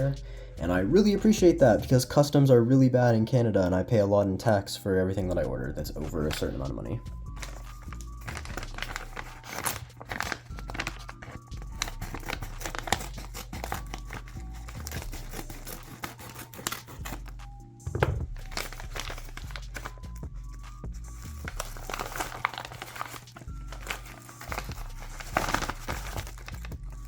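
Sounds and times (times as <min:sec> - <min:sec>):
background music: 0:00.0 - 0:27.0
package packaging tearing: 0:07.4 - 0:17.3, 0:18.4 - 0:20.2, 0:21.2 - 0:26.8.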